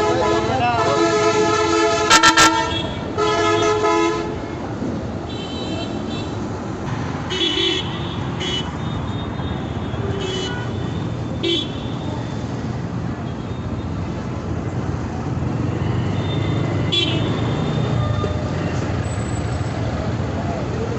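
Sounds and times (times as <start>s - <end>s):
vehicle horn toots: 0.0s - 4.5s
traffic engines rumbling: 0.0s - 20.9s.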